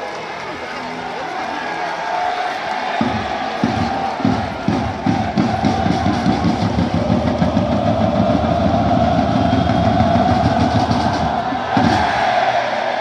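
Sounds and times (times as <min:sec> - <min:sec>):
crowd singing together: 0:02.4 - 0:13.0
fast low beat: 0:03.0 - 0:12.2.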